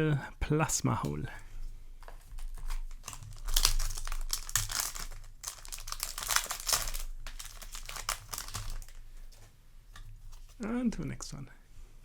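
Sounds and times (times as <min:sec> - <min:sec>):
foil wrapper crinkling: 0:02.0 - 0:09.5.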